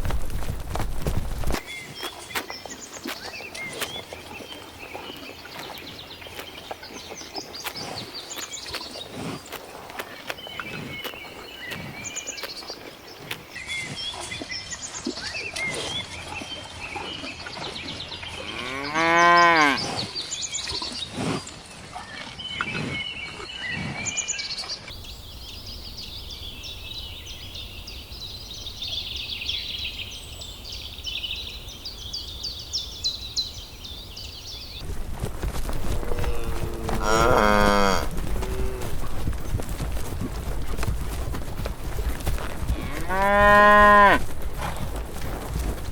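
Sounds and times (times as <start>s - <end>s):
birds chirping: 0.0s - 21.2s, 22.4s - 45.9s
cow mooing: 18.5s - 19.8s, 36.0s - 38.9s, 42.8s - 44.2s.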